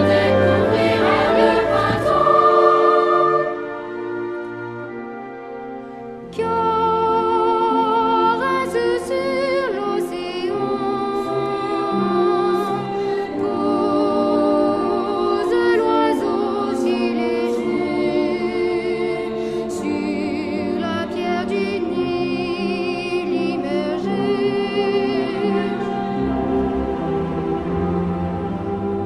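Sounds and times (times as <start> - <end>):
choir singing held notes: 0.0 - 5.3.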